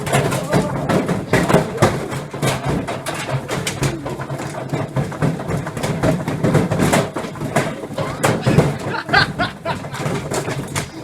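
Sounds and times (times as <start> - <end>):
knocking and rattling: 0.0 - 11.0
washing machine motor humming: 7.0 - 11.0.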